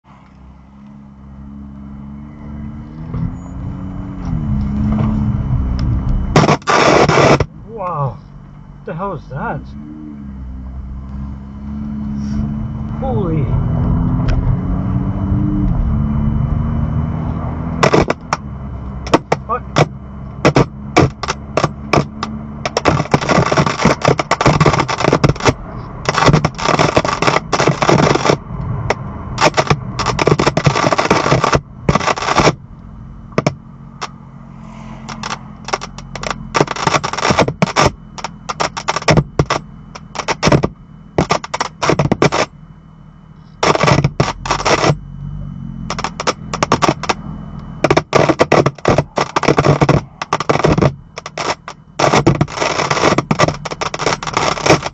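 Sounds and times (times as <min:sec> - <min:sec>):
crackling speaker static: 0:00.0 - 0:54.9
steady low hum: 0:00.0 - 0:54.9.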